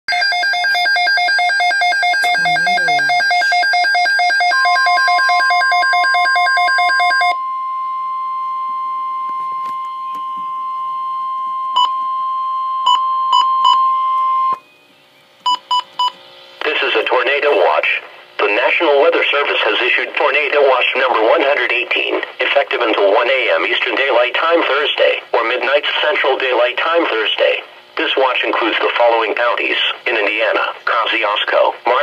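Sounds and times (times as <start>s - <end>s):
short beeps: 2.0s - 5.4s
steady alert tone: 2.1s - 3.9s.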